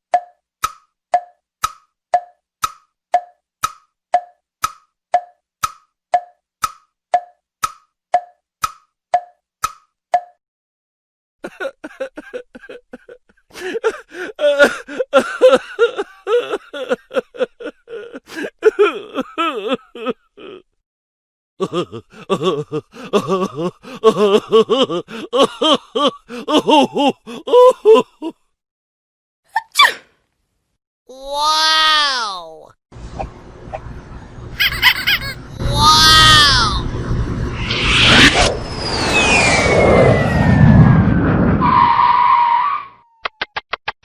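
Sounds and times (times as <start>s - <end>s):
short rising sweep: 36.8s - 41.6s.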